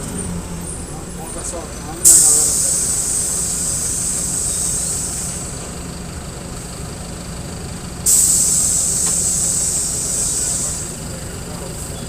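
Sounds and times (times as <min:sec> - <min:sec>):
bus diesel engine idling: 0:00.0 - 0:12.0
compressed air hiss: 0:02.0 - 0:05.7, 0:08.0 - 0:11.2.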